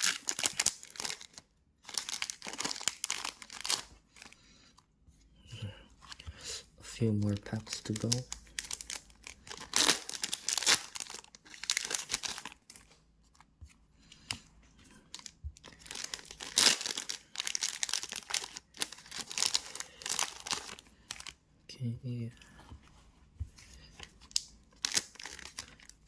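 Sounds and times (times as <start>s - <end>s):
card wrappers crinkling and tearing: 0.0s - 4.4s, 7.1s - 13.5s, 15.0s - 21.4s, 23.8s - 26.0s.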